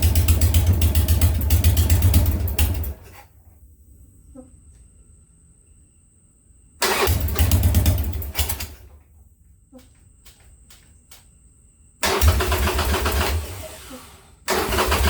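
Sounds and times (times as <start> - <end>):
motorcycle engine cranking and firing: 0.0 - 3.2, 6.8 - 9.0, 12.0 - 15.0.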